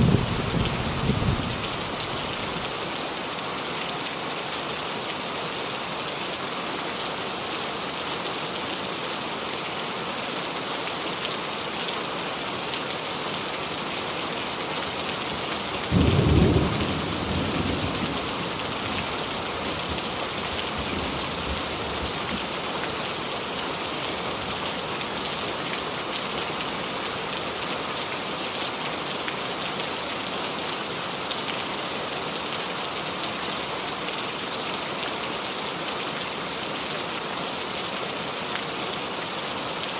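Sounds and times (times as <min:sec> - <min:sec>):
thunder clap and rumble: 0:00.0 - 0:01.6
heavy rain on a roof: 0:00.0 - 0:39.9.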